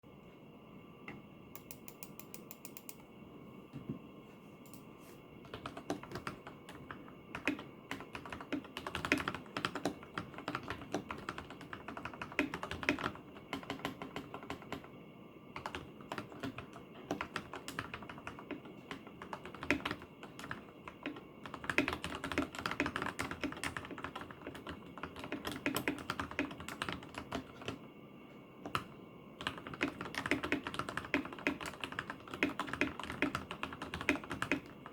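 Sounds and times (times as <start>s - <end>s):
mechanical keyboard typing: 5.4s - 14.9s, 15.6s - 27.8s, 28.7s - 34.9s.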